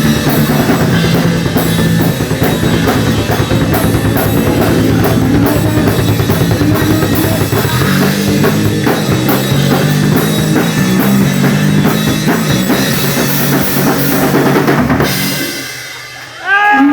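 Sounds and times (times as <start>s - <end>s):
drum kit beat: 0.0s - 16.9s
rock and roll band playing: 0.0s - 16.9s
stepping bass line: 0.0s - 16.9s.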